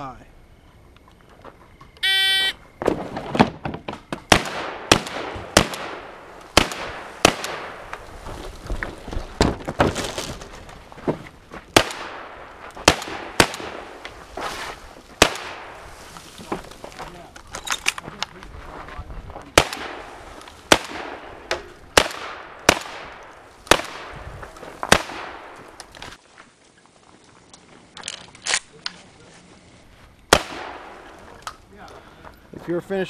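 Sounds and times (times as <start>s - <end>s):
shot timer beep: 2.0s - 2.6s
shotgun shots: 4.3s - 8.0s, 11.8s - 14.0s, 15.2s - 15.8s, 19.6s - 24.2s, 24.8s - 25.8s, 30.3s - 31.2s.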